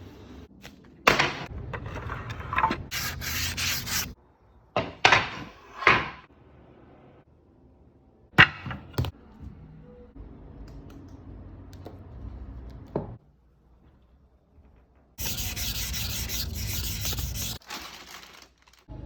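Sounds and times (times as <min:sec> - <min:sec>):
sandpaper rasping on wood: 0:02.9 - 0:04.2, 0:15.2 - 0:17.6.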